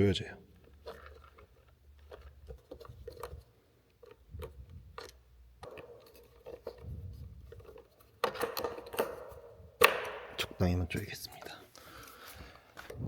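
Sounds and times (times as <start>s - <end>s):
screwdriver clicking and scraping: 4.0s - 6.9s, 7.5s - 10.0s.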